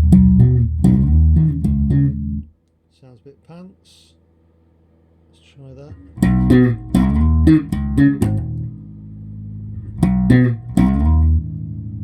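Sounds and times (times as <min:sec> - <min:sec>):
electric bass guitar notes: 0:00.0 - 0:02.6, 0:05.9 - 0:12.0.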